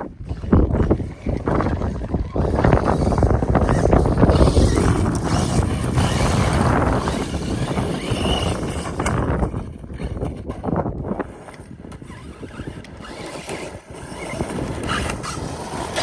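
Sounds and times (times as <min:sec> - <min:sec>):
wind buffeting microphone: 0:00.0 - 0:16.0
high whine of electric motor: 0:02.2 - 0:16.0.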